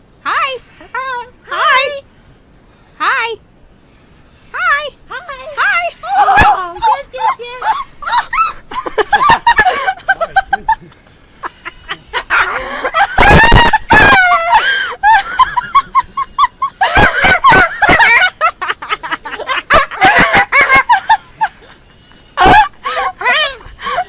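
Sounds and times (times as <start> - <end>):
parrot screeching and chattering: 5.2 - 9.9.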